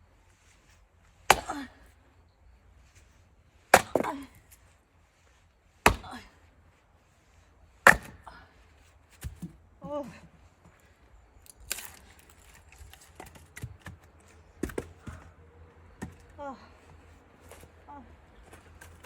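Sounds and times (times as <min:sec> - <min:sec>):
axe splitting firewood: 0:01.2 - 0:01.9, 0:03.7 - 0:04.6, 0:05.8 - 0:06.3, 0:07.7 - 0:08.5, 0:09.2 - 0:10.2, 0:11.5 - 0:15.3.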